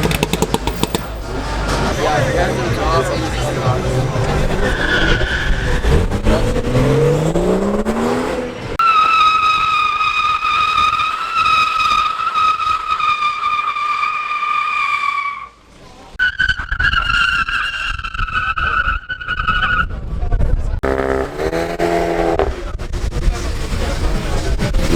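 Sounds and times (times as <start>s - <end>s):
tyres squealing: 0.0s - 7.3s
car engine revving: 0.0s - 8.8s, 20.8s - 24.9s.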